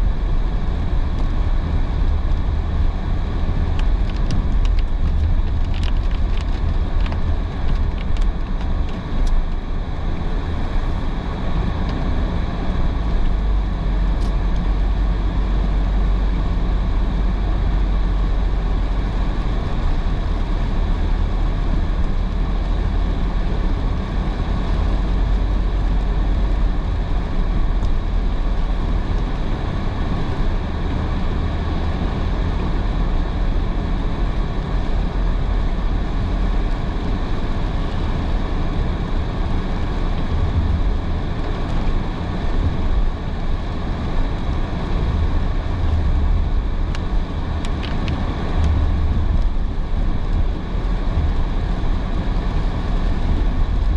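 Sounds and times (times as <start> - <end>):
road rumble inside car: 0.0 - 53.9
rain on car: 3.8 - 8.8, 39.4 - 53.9.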